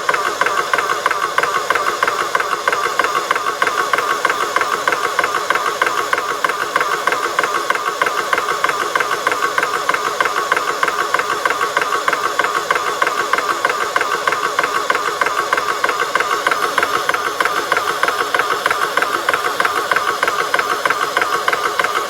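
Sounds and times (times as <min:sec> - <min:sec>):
air compressor pulsing: 0:00.0 - 0:22.0.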